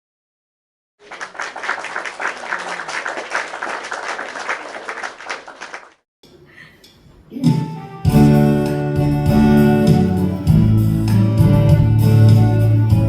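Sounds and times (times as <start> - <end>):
audience applauding: 1.0 - 6.0.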